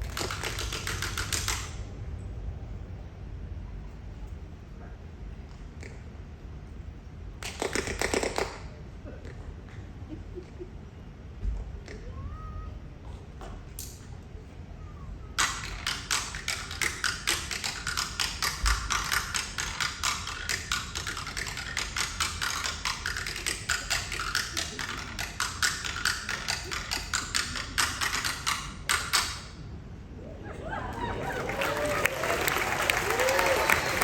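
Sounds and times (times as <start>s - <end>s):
tap shoes on stage floor: 0.0s - 1.7s, 15.4s - 29.4s, 31.5s - 34.0s.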